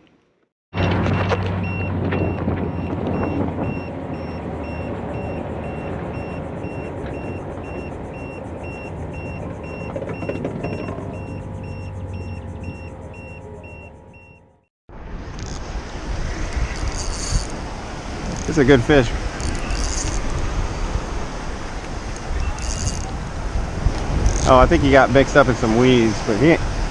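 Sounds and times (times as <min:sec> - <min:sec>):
electronic warning beeper: 0:01.1 - 0:14.5
motor humming: 0:02.2 - 0:24.7.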